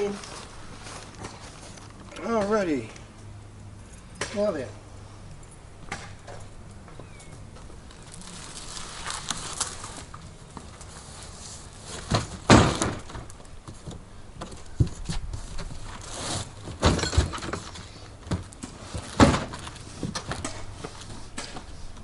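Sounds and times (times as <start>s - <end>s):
canopy frame knocking and scraping: 11.9s - 21.6s.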